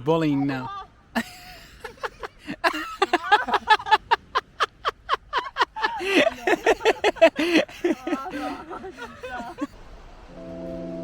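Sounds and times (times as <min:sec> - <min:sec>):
people laughing: 0:01.2 - 0:09.8.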